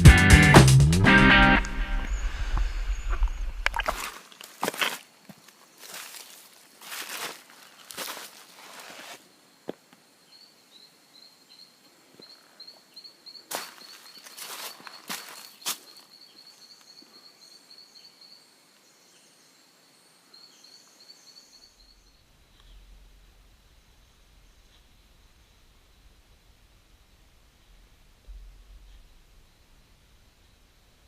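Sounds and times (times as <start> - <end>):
footsteps through undergrowth: 1.7 - 9.2, 13.5 - 16.2
twigs crunching and snapping: 3.1 - 9.1.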